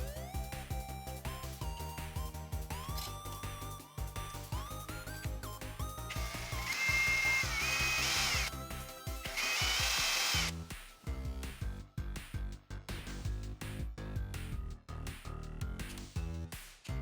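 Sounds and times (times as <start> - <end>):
background music: 0.0 - 17.0
power tool motor whining: 6.1 - 8.5, 9.3 - 10.5.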